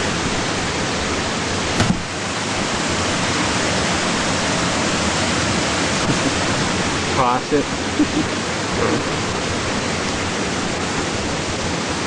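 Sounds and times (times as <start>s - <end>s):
waterfall rushing: 0.0s - 12.0s
brief thump: 1.8s - 2.1s.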